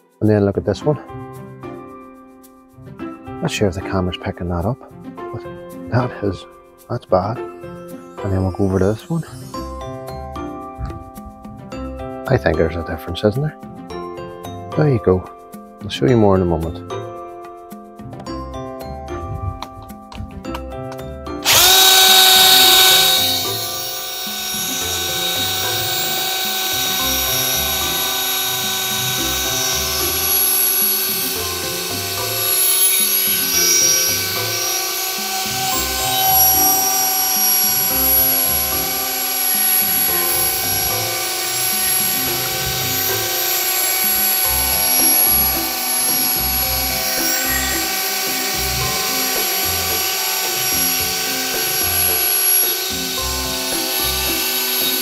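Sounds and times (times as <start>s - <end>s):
background music: 0.0s - 55.0s
electric drill motor whine: 21.4s - 55.0s.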